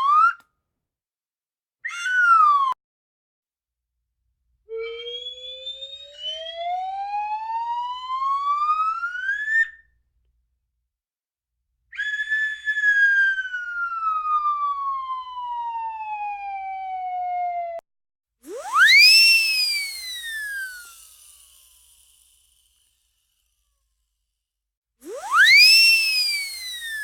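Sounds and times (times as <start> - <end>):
slide whistle gliding: 4.7 - 9.8, 12.0 - 15.0, 18.4 - 23.7, 25.0 - 27.0.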